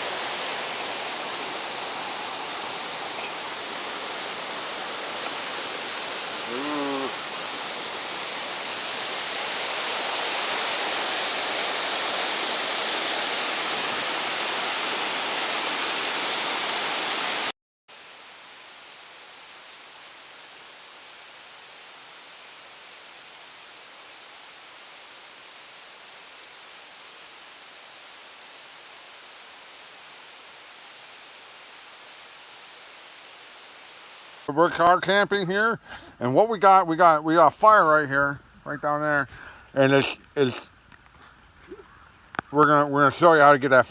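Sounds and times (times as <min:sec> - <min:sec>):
rushing water: 0:00.0 - 0:34.5
quiet steady hiss: 0:00.0 - 0:43.9.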